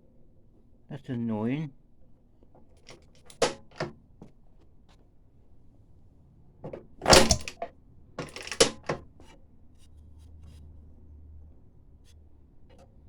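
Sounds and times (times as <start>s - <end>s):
lawnmower metal clunks and rattles: 2.9s - 4.0s, 6.6s - 9.1s.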